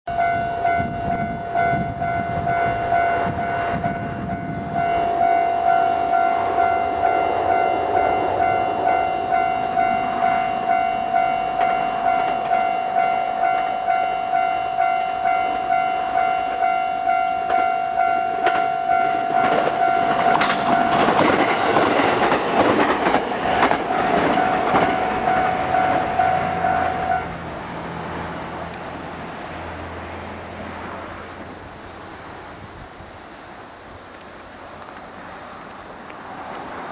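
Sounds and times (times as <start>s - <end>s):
level-crossing alarm dinging: 0.1s - 27.4s
train wheels clattering over rail joints: 18.3s - 27.2s.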